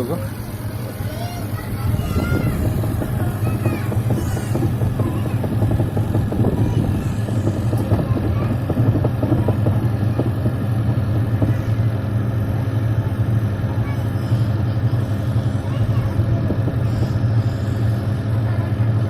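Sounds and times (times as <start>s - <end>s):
washing machine spinning: 0.0s - 19.0s.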